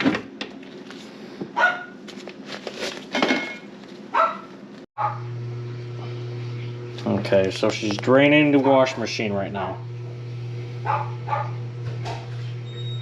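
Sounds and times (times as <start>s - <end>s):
dog barking: 1.6s - 2.0s, 4.1s - 5.3s, 10.8s - 11.6s
steady low hum: 5.0s - 11.6s.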